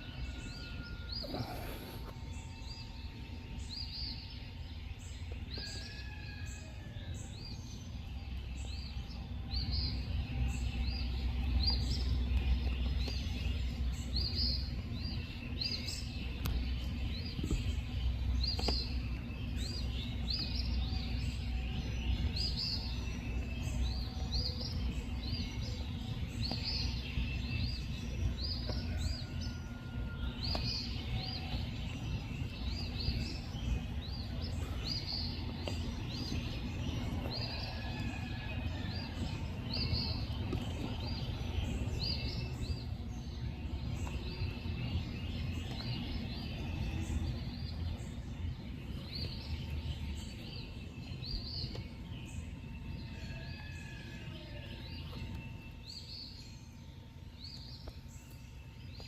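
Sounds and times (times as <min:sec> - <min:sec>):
steady low rumble: 0:07.0 - 0:53.7.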